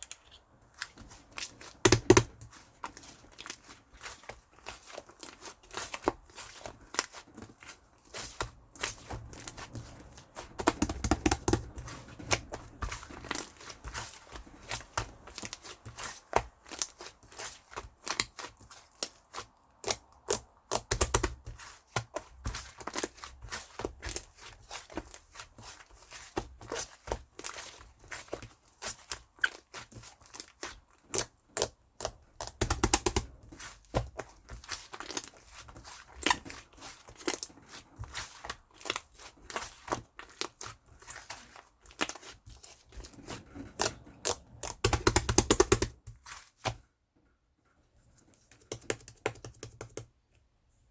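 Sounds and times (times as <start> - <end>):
slime squishing with wet clicks: 0.0 - 46.9.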